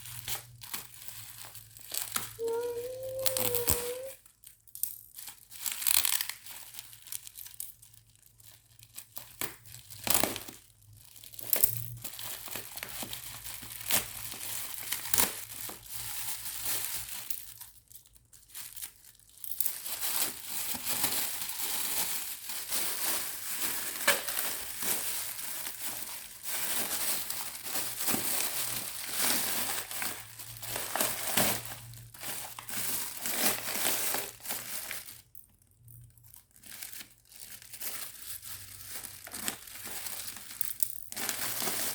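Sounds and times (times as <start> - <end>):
packaging crinkling and tearing: 0.0 - 41.9.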